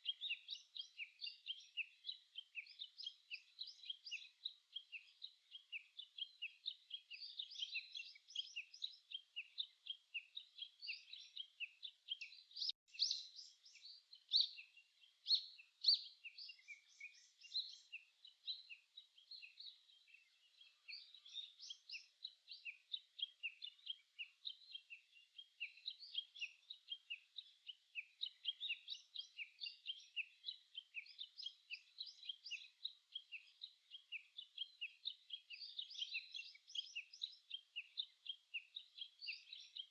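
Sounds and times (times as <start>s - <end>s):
small birds chirping: 0.0s - 39.9s.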